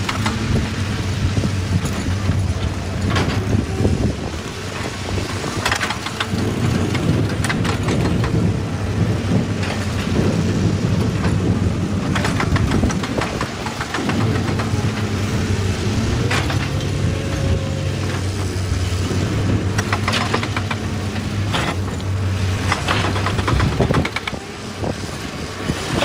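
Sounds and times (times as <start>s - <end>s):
diesel engine running: 0.0s - 26.0s
clattering and scraping: 1.4s - 8.6s, 18.0s - 26.0s.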